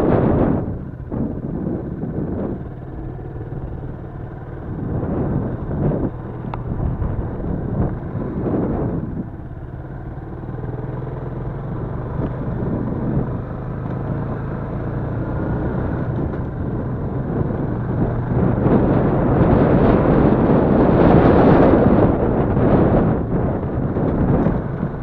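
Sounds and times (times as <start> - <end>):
motorcycle engine running: 0.0 - 25.0
rough rushing noise: 0.0 - 25.0.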